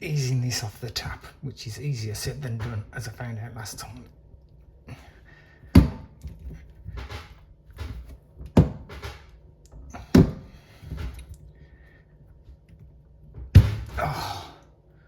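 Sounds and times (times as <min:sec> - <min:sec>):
handling and rattling noises: 0:05.8 - 0:11.4.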